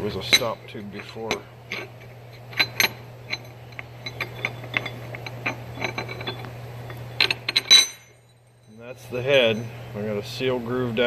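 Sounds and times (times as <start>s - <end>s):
steady low hum: 0.0s - 11.0s
metal clicks and knocks: 0.2s - 8.2s.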